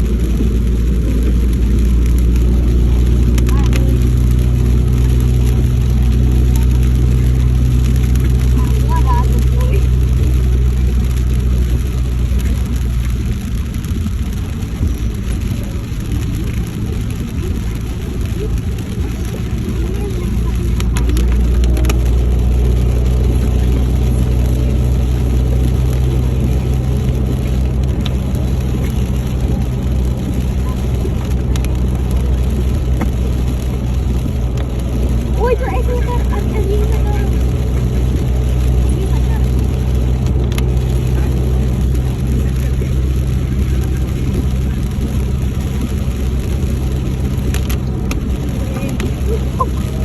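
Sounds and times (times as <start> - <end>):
road noise rush: 0.0 - 50.0
vehicle engine drone: 0.0 - 50.0
faint clicks: 35.8 - 49.7.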